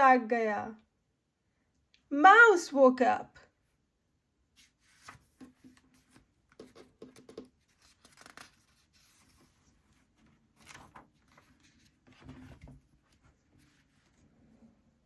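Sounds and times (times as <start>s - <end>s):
paper rustling and clicking: 4.6s - 14.2s.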